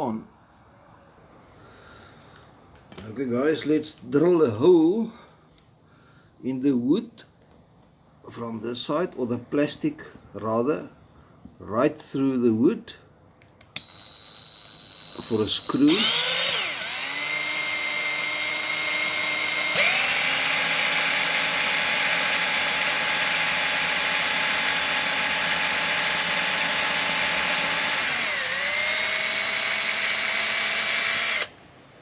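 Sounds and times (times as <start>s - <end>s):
electric drill drilling: 13.8s - 31.6s.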